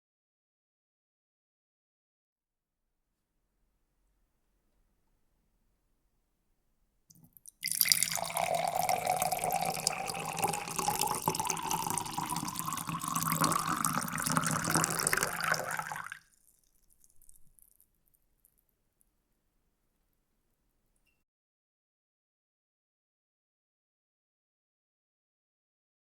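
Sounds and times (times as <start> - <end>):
water pouring into a glass: 7.4 - 17.8.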